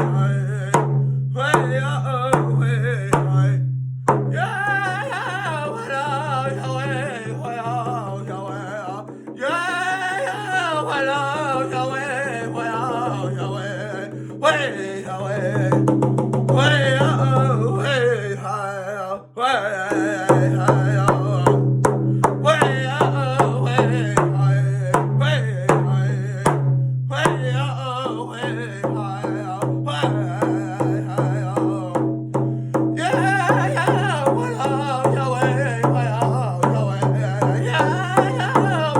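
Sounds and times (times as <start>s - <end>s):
person singing in wavering voice: 0.0s - 3.6s, 4.3s - 15.9s, 16.5s - 21.6s, 22.2s - 26.5s, 27.1s - 38.9s
drum beating steadily: 0.0s - 9.8s, 15.4s - 17.8s, 19.9s - 38.9s.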